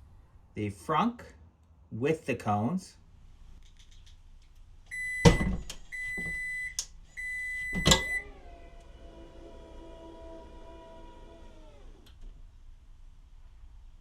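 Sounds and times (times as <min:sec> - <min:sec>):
steady humming tone: 0:07.9 - 0:12.2.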